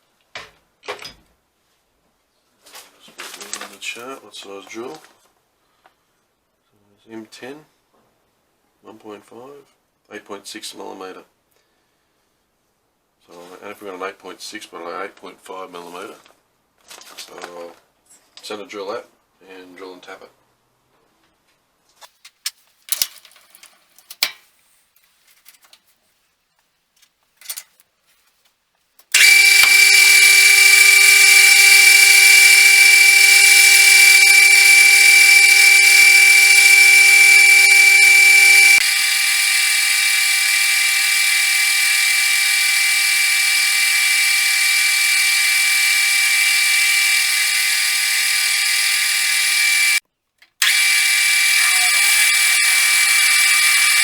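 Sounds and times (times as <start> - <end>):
metal lathe whining: 29.1 - 50.0, 50.6 - 54.0.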